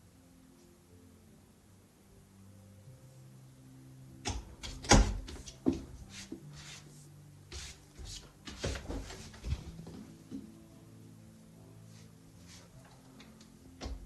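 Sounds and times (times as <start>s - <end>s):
faint background music: 0.0s - 14.0s.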